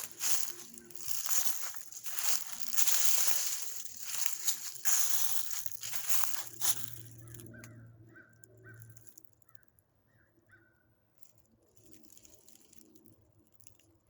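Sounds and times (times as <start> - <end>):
footsteps crunching dry leaves: 0.0 - 7.7.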